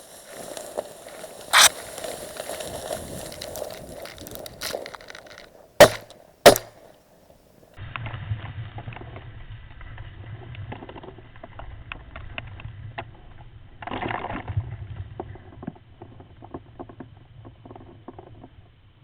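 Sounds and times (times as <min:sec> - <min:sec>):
faint sharp crack: 0:00.4 - 0:07.0
shotgun shots: 0:05.8 - 0:06.9.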